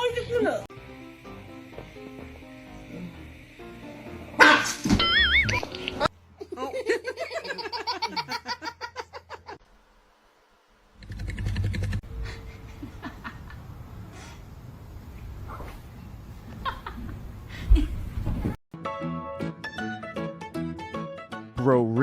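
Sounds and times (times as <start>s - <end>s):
hearty laughter: 5.0s - 9.6s, 12.1s - 13.7s.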